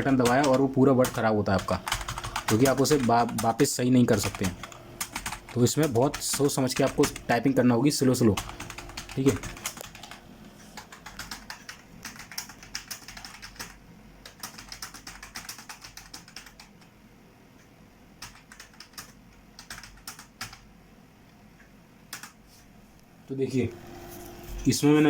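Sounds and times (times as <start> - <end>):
typing on computer keyboard: 0.0 - 7.2, 8.3 - 10.2, 10.8 - 16.9, 18.2 - 20.7, 22.1 - 22.4.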